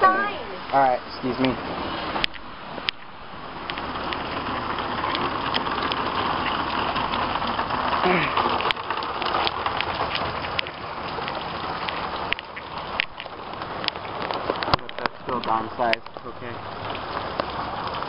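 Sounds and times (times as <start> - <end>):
hailstones striking hard surfaces: 3.6 - 18.0.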